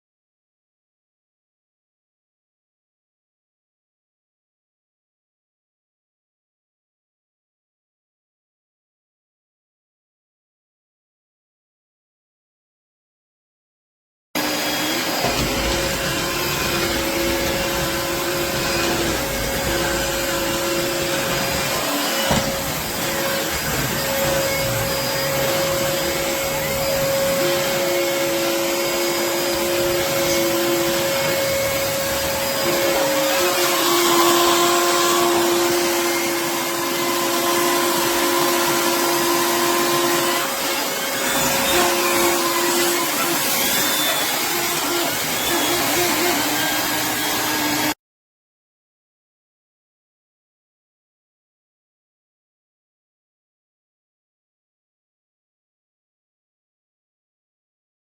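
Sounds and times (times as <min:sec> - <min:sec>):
vacuum cleaner running: 0:14.4 - 0:48.0.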